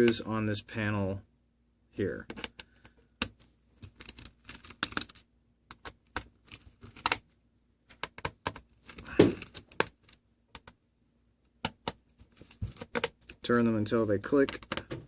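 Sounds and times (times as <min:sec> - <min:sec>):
laptop plastic clicks and taps: 0:07.9 - 0:08.6, 0:12.7 - 0:13.4, 0:14.5 - 0:15.0.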